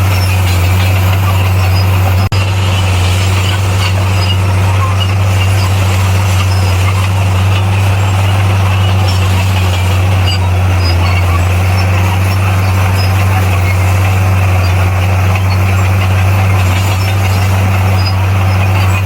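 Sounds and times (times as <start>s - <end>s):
bulldozer diesel engine running: 0.0s - 19.0s.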